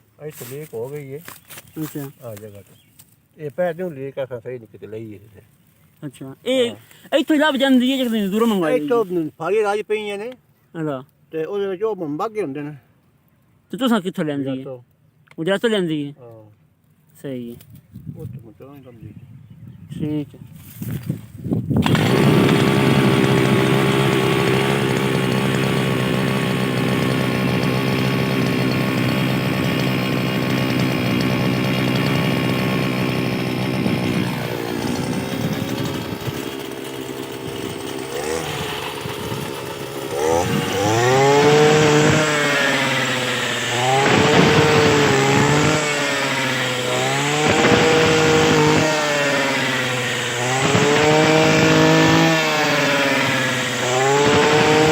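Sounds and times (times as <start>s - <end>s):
small engine revving: 21.8s - 54.9s.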